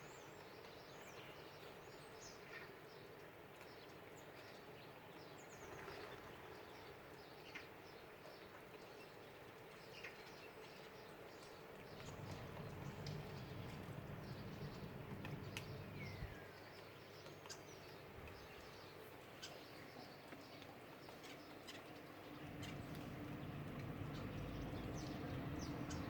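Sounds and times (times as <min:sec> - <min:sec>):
faint birdsong and calls: 0:00.0 - 0:26.0
low rumble: 0:11.9 - 0:16.4, 0:22.2 - 0:26.0.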